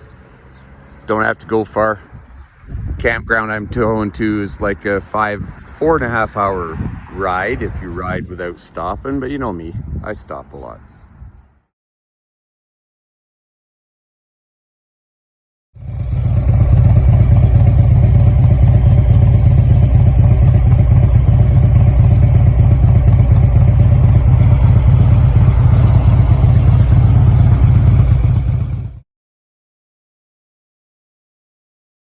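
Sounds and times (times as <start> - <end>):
wind buffeting on microphone: 2.1 - 10.3, 11.0 - 11.6
motorcycle engine drone: 5.6 - 10.3, 15.8 - 29.0.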